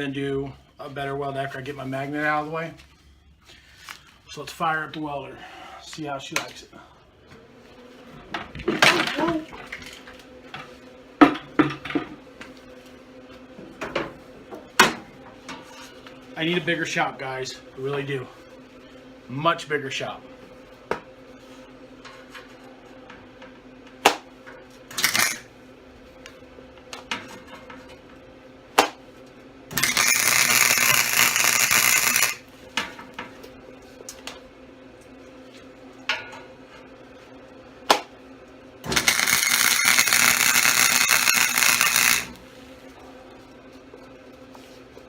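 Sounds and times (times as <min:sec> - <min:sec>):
welding arc: 0:24.9 - 0:25.5, 0:29.7 - 0:32.4, 0:38.9 - 0:42.4.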